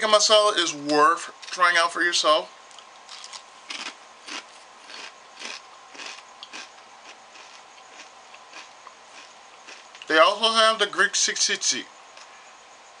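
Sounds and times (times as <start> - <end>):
potato chips crunching while chewed: 2.8 - 10.1.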